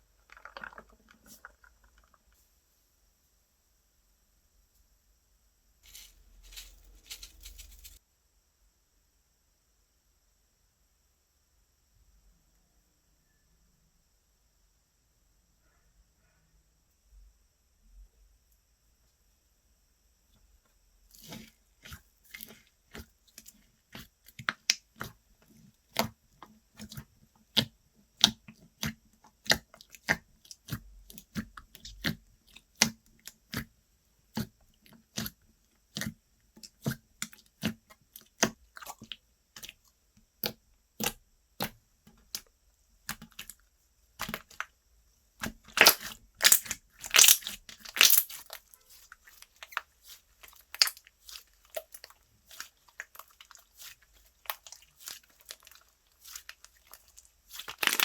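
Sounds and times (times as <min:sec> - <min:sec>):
slime squished by hand: 0:45.4 - 0:58.0.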